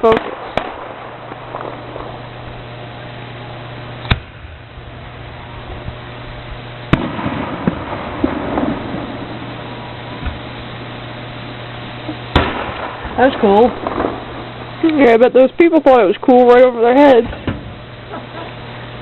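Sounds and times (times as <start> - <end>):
fireworks shells bursting: 0.0 - 4.6, 6.8 - 15.8
fireworks pops and crackles: 0.0 - 18.7.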